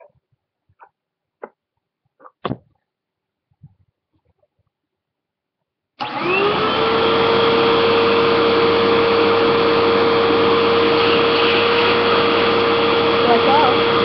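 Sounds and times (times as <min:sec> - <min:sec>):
vacuum cleaner motor whine: 0:06.0 - 0:14.0.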